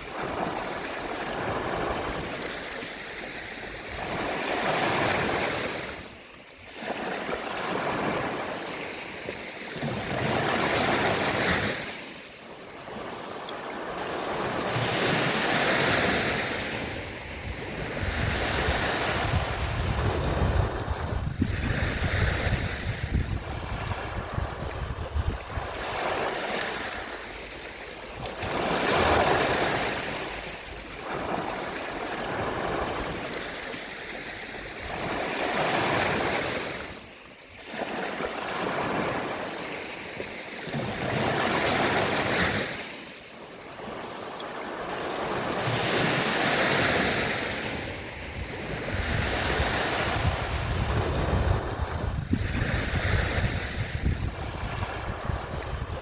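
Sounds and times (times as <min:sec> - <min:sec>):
gentle sea waves washing ashore: 0:00.0 - 0:56.0.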